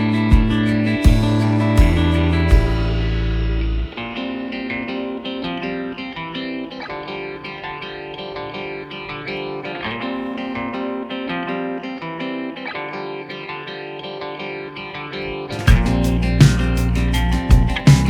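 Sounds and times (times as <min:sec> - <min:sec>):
plucked-string melody: 0:00.0 - 0:18.0.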